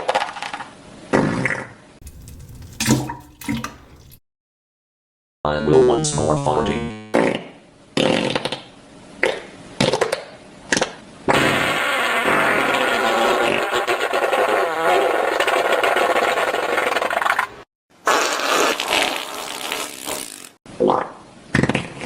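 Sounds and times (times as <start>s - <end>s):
farts: 0.5s - 2.7s, 6.9s - 22.0s.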